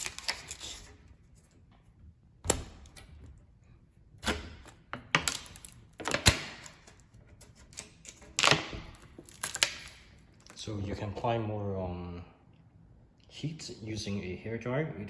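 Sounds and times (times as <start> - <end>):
vinyl film crackling and tearing: 0.0 - 1.0, 5.3 - 10.6.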